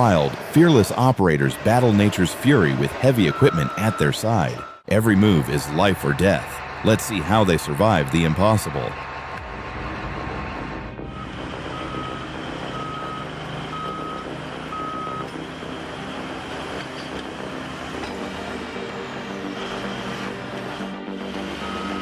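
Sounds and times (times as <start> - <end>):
vehicle reversing alarm beeping: 1.6 - 22.0
vehicle engine running: 5.2 - 22.0.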